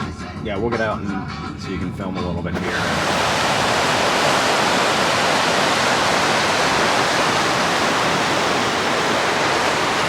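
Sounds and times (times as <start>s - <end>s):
roar of rushing white water: 2.6s - 10.0s.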